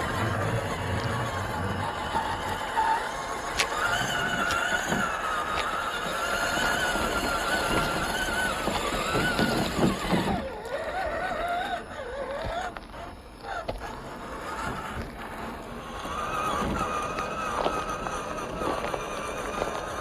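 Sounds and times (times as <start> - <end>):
tyres knocking and crunching: 0.0 - 15.7
electric motor whining: 0.0 - 20.0.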